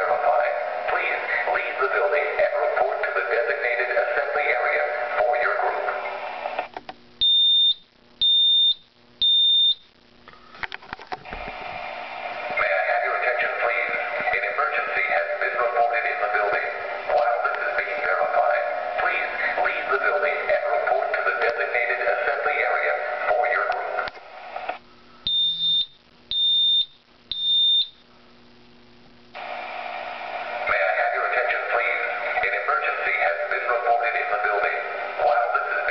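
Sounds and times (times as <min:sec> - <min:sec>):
recorded voice warning: 0:00.0 - 0:06.7, 0:12.4 - 0:24.8, 0:30.4 - 0:35.9
smoke detector high-pitched beeps: 0:07.2 - 0:09.9, 0:25.3 - 0:28.0.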